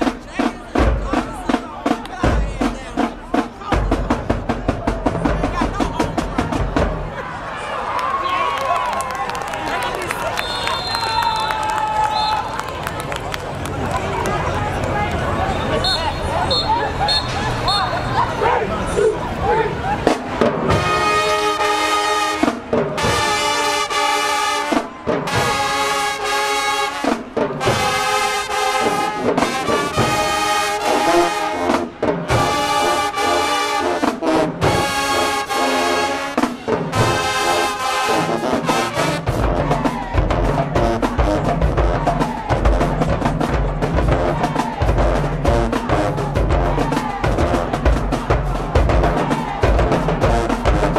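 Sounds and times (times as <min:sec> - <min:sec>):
bass drums steady beat: 0:00.0 - 0:07.1, 0:39.2 - 0:50.9
brass section playing chords: 0:20.6 - 0:50.9.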